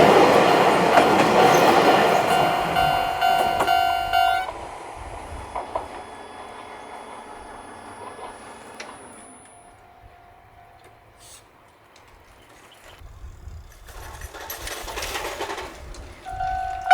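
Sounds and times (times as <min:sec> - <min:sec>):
level crossing warning bell: 0:00.0 - 0:04.6, 0:06.1 - 0:11.3, 0:16.3 - 0:16.9
train running on rails: 0:00.0 - 0:16.9.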